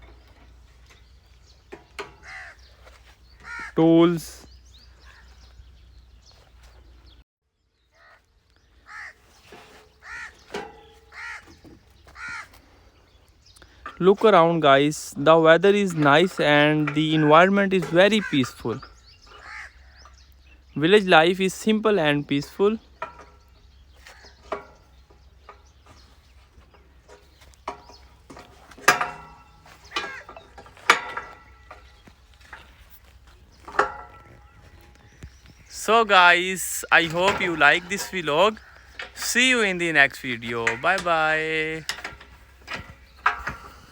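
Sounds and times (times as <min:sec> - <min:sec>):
crow cawing: 0:02.2 - 0:02.7, 0:03.4 - 0:03.8, 0:08.8 - 0:09.3, 0:10.0 - 0:10.4, 0:11.1 - 0:12.6, 0:19.3 - 0:20.2.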